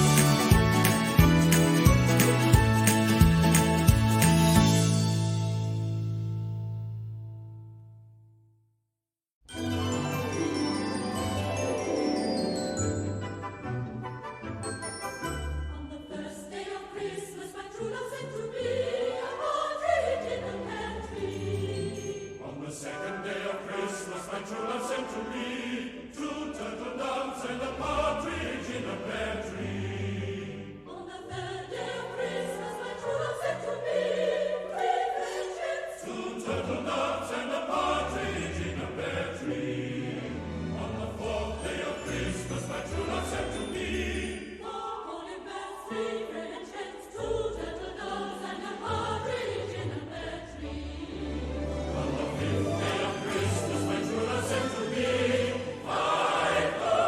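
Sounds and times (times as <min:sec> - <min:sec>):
instrumental accompaniment with bass: 0:00.0 - 0:07.7
choir singing: 0:15.4 - 0:57.0.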